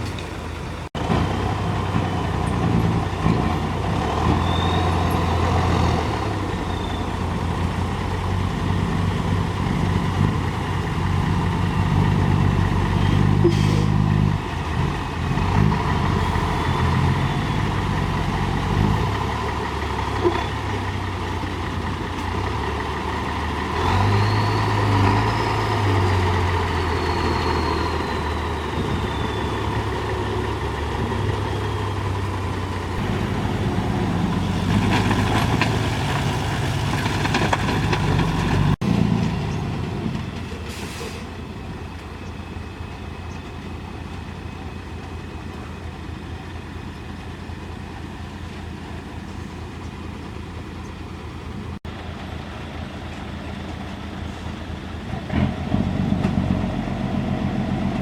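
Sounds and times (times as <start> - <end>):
heavy diesel engine revving: 0.0 - 41.5, 54.1 - 58.0.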